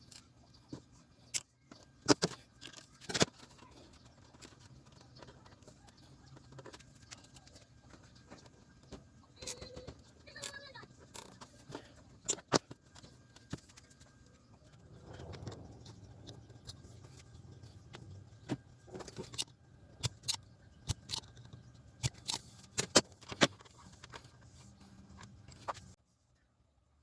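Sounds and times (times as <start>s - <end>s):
clicks of small parts: 17.9s - 24.3s.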